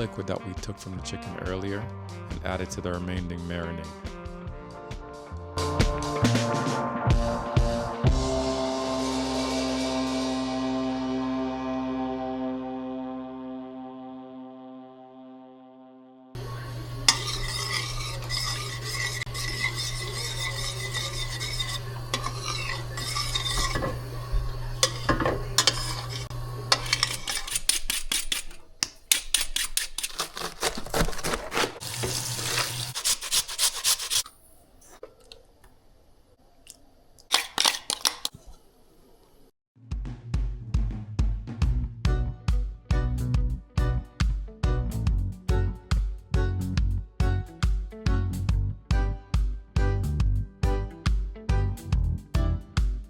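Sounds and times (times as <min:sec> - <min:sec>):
steady low hum: 0:16.4 - 0:28.1
spoon scraping in a pot: 0:16.4 - 0:34.3.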